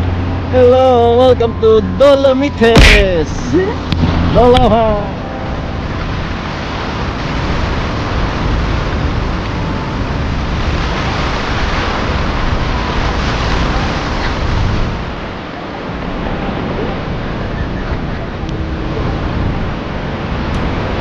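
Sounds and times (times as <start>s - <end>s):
sea waves washing on beach: 0.0s - 21.0s
wind rumbling on microphone: 0.0s - 21.0s.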